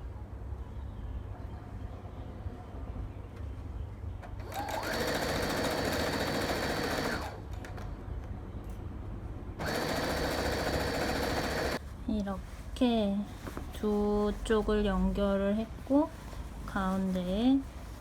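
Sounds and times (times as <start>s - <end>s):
sewing machine stitching: 4.4s - 7.4s, 9.6s - 11.8s.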